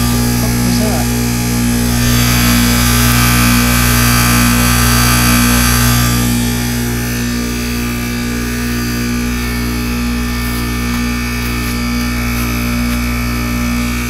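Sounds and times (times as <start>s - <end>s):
heat pump humming: 0.0s - 14.0s.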